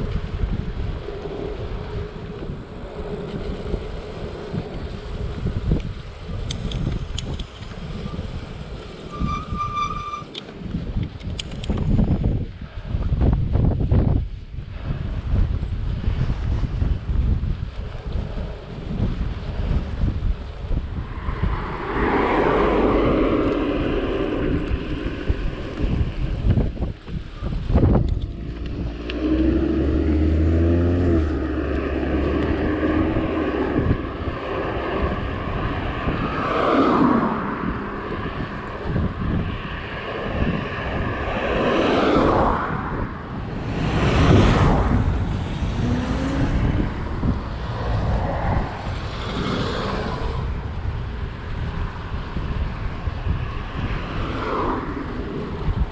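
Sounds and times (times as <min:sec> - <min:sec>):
wind rushing over microphone: 0:00.0 - 0:55.9
motor vehicles passing: 0:16.3 - 0:55.9.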